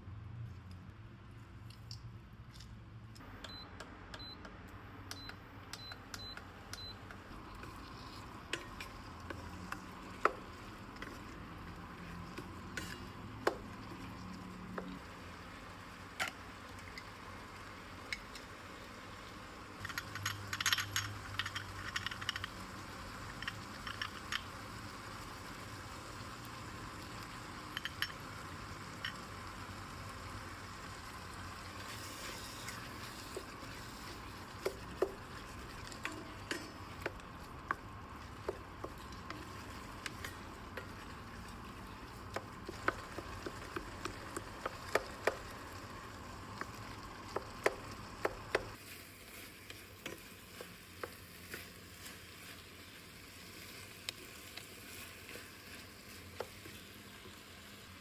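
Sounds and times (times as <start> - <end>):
spoon clinking and scraping pot: 31.9 - 43.8.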